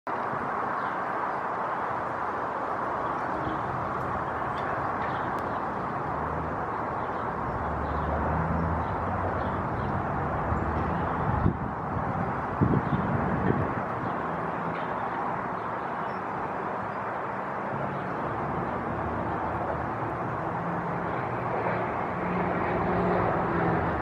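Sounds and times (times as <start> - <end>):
distant road traffic: 0.1 - 24.0
vehicle engine rumble passing: 2.9 - 15.6, 17.5 - 24.0.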